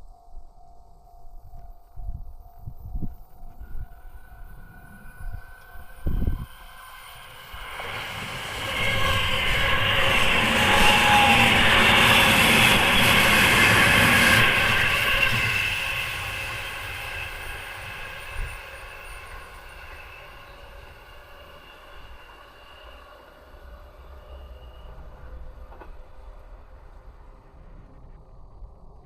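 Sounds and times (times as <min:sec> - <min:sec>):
electric train passing: 0:00.0 - 0:29.0.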